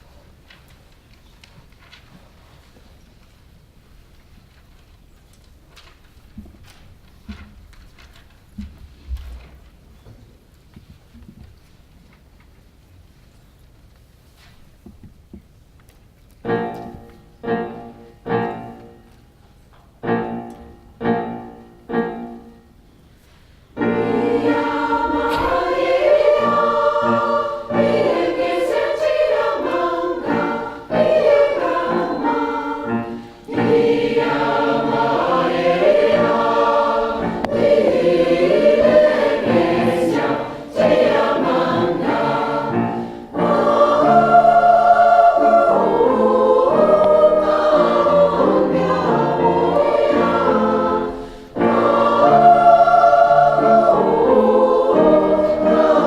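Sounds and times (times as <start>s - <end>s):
choir singing in harmony: 16.4s - 19.0s, 20.0s - 22.6s, 23.7s - 56.0s.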